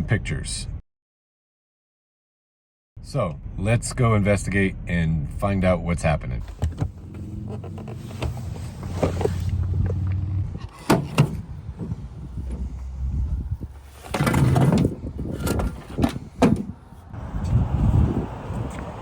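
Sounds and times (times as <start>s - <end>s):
car engine running: 6.4s - 16.9s.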